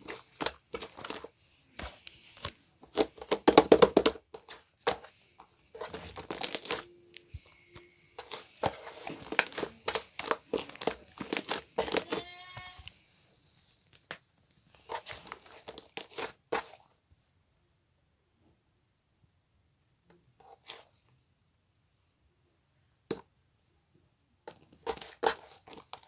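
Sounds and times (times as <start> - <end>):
crinkling and rustling: 0.0 - 16.9, 24.5 - 26.0.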